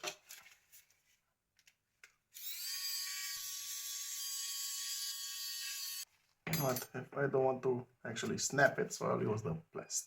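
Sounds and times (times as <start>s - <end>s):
electric tool motor whining: 2.4s - 6.0s.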